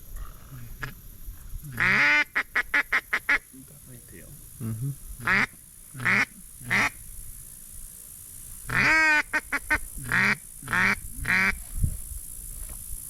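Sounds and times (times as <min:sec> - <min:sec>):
duck quacking: 0:01.8 - 0:03.4, 0:05.2 - 0:07.0, 0:08.7 - 0:11.5.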